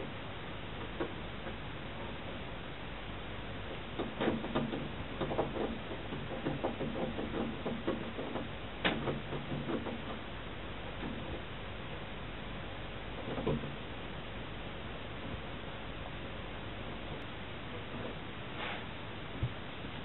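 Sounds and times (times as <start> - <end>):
tapping and scratching in ceiling: 0.7 - 2.5, 3.6 - 11.6, 13.0 - 14.0
steady hiss: 10.2 - 20.0.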